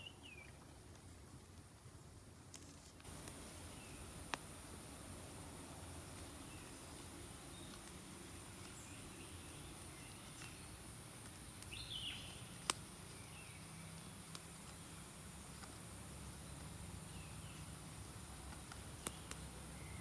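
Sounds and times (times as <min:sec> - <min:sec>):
bird chirp: 0:00.0 - 0:00.6, 0:03.5 - 0:04.2, 0:05.8 - 0:20.0
high insect hum: 0:02.1 - 0:20.0
soft ticks: 0:13.9 - 0:14.8, 0:18.5 - 0:19.5.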